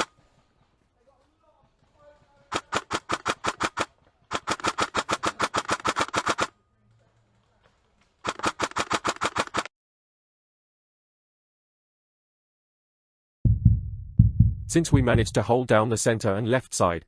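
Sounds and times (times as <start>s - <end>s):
airsoft guns firing bursts: 0.0s - 0.4s, 1.6s - 6.6s, 8.1s - 9.7s.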